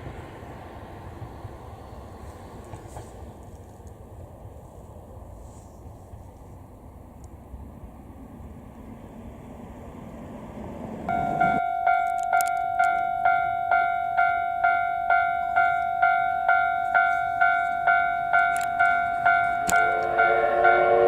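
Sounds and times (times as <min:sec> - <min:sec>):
level-crossing warning bell: 0:11.1 - 0:21.0.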